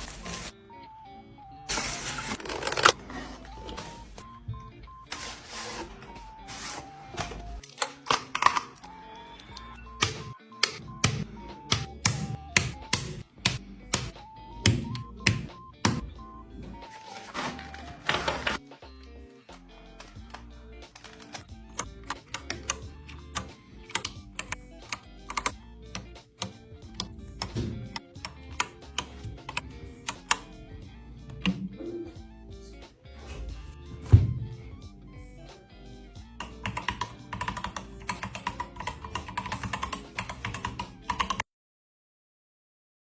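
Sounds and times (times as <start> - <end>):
background music with bass: 0.0 - 41.4
packaging clicks and taps: 7.1 - 16.0.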